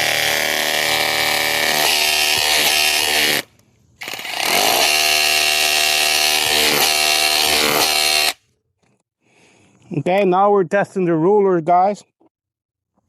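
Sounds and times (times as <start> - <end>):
rotary hammer drilling into stone: 0.0 - 8.4.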